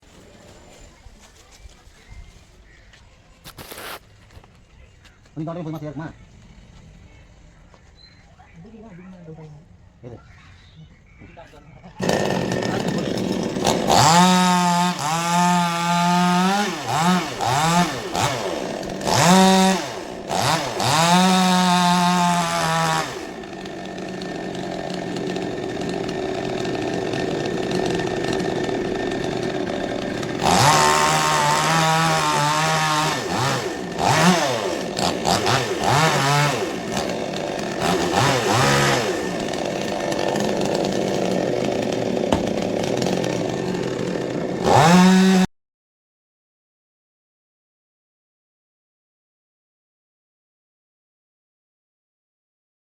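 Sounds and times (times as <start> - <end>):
chainsaw engine revving: 12.0 - 45.5.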